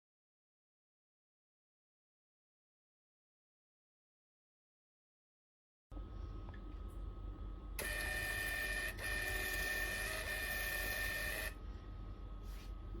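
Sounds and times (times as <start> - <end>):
faint steady hum: 5.9 - 13.0
label printer motor whine: 7.8 - 11.6.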